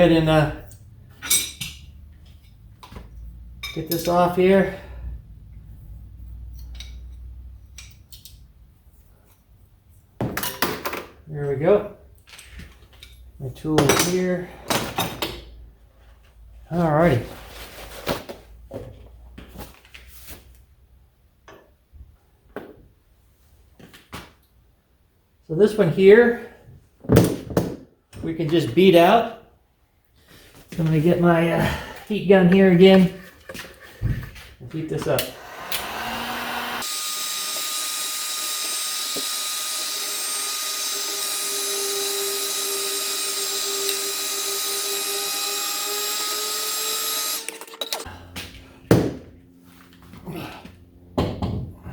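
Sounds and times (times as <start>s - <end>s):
heat gun fan hiss: 35.2s - 37.0s
tools clicking and knocking: 47.2s - 48.1s.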